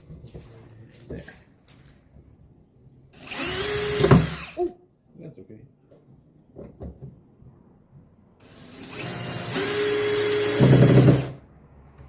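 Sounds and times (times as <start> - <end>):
power drill driving screw into wood: 3.2 - 4.7, 8.4 - 11.4.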